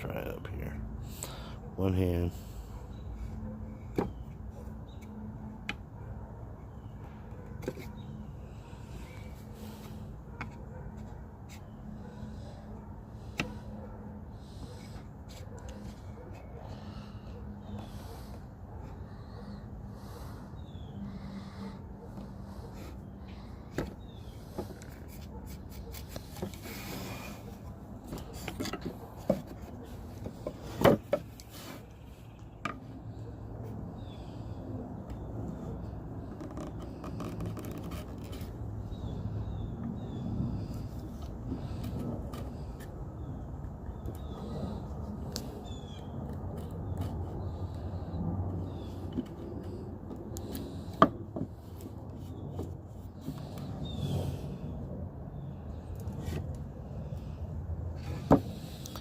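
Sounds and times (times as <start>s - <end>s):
chisel scraping wood: 7.3s - 18.4s, 21.0s - 32.0s, 35.6s - 38.6s, 58.0s - 59.0s.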